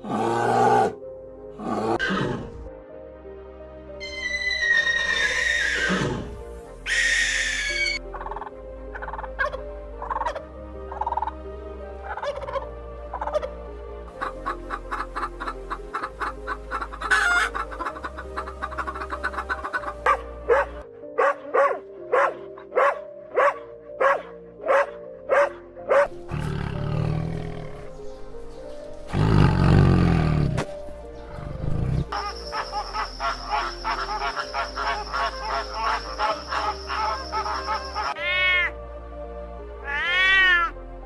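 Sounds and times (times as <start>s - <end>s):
background music: 0.0s - 41.0s
animal calls: 4.0s - 6.3s, 14.5s - 28.0s, 31.3s - 38.7s.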